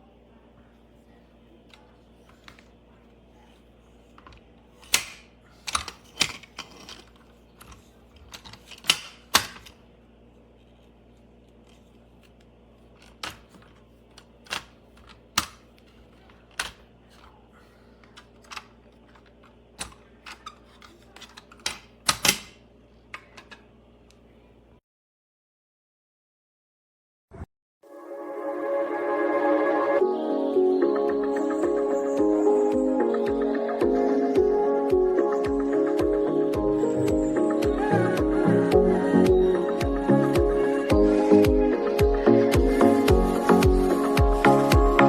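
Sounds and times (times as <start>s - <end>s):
faint steady hum: 0.0s - 24.8s
plastic toy clicks and knocks: 4.2s - 9.8s, 13.0s - 15.7s, 16.4s - 17.3s, 18.1s - 22.6s.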